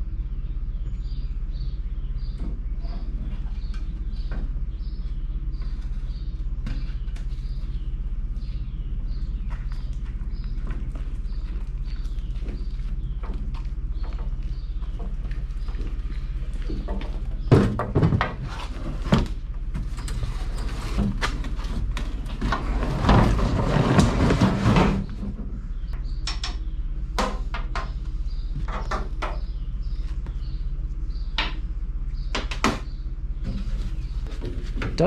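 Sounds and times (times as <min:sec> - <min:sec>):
low hum: 0:00.0 - 0:35.0
scrap metal knocks and clanks: 0:12.4 - 0:25.5.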